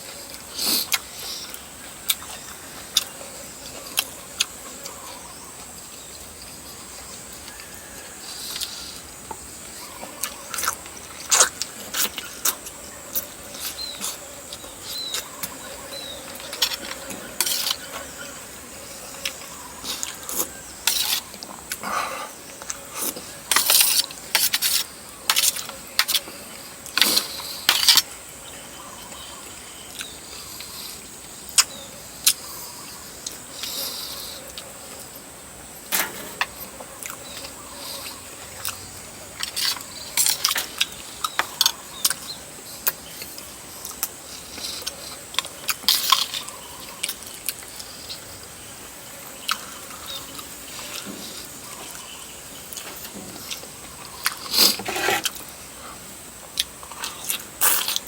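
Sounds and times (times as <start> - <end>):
chewing and slurping: 19.2 - 28.1, 52.7 - 56.0, 56.6 - 58.0.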